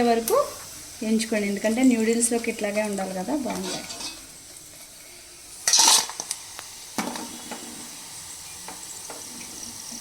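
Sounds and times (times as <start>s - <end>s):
chicken deep-frying in oil: 0.0s - 10.0s
spoon scraping a pan: 3.4s - 5.0s, 5.6s - 6.4s.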